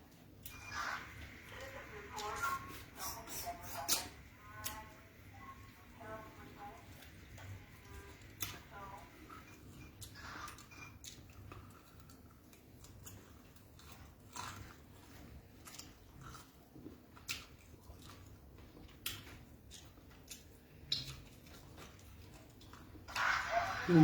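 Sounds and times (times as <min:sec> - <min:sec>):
person chewing food: 0:06.6 - 0:23.3
wet mouth clicks and smacks: 0:19.0 - 0:21.8.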